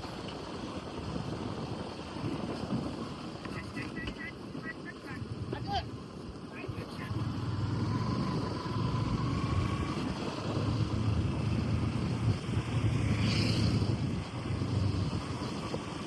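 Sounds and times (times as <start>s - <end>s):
road noise: 0.0s - 16.0s
vehicle engine running: 5.0s - 16.0s.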